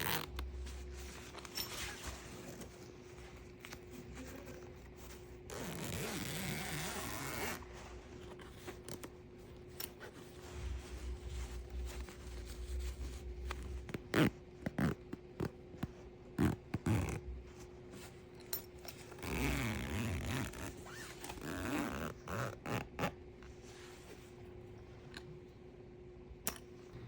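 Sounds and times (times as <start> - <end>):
fabric scraping and rustling: 0.0 - 14.2
faint steady hum: 0.0 - 27.0.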